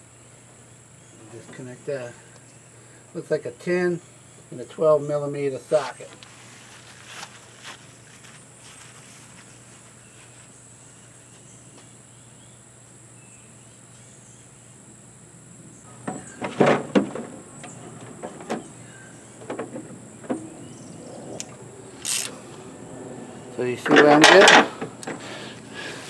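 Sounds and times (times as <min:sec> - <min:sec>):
high insect trill: 0:00.0 - 0:26.0
socket wrench clicking: 0:21.4 - 0:22.4.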